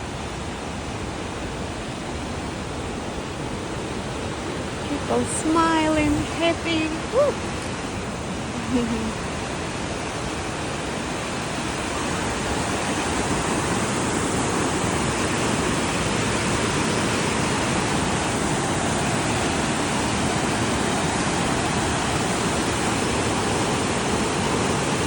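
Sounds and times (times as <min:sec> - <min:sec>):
water rushing: 0:00.0 - 0:25.0.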